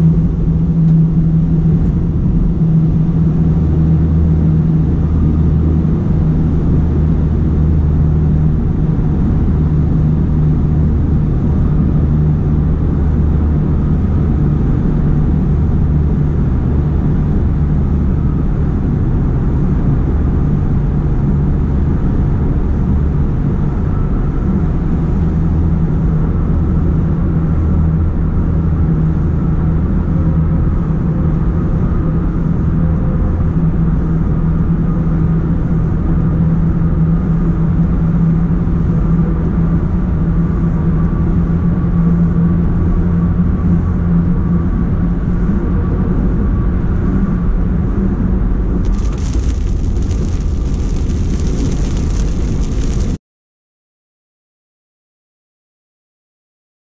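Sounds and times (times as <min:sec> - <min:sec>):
constant low hum: 0:00.0 - 0:53.2
low vehicle rumble: 0:47.4 - 0:53.2.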